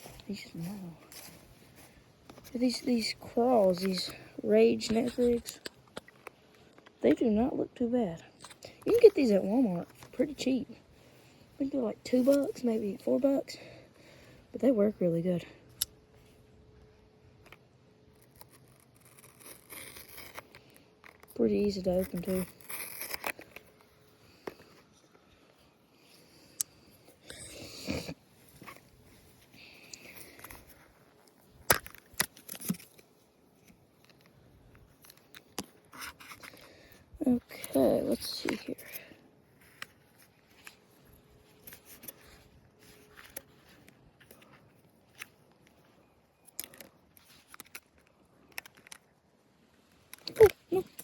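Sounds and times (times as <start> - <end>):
plastic package rustle: 17.4 - 25.5, 28.4 - 49.2.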